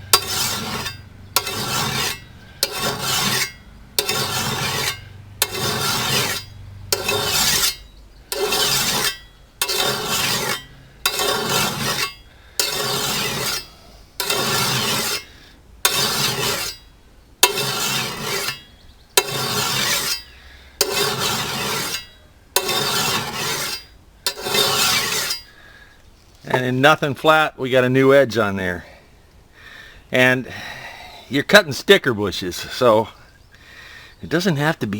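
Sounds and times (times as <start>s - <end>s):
file rasping on steel blade: 0.1s - 16.8s, 17.4s - 25.5s.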